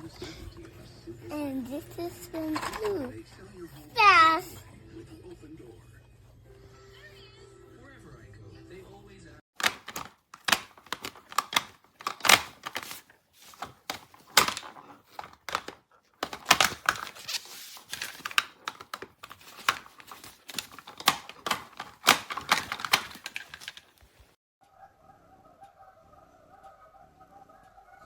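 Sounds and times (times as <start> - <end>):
plastic toys clicking and rattling: 1.6 - 3.2, 9.6 - 24.3.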